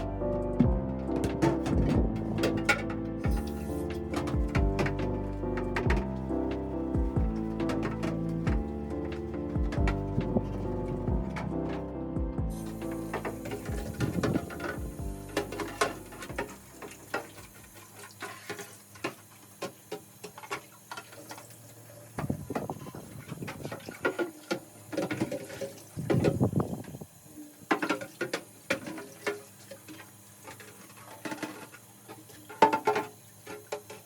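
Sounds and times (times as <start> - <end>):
objects clicking and knocking: 0.0 - 21.4.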